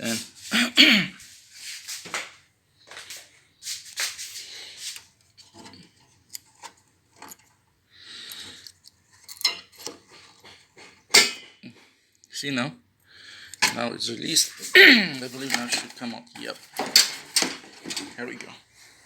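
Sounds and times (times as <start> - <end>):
metal spring scraping: 11.0 - 11.6.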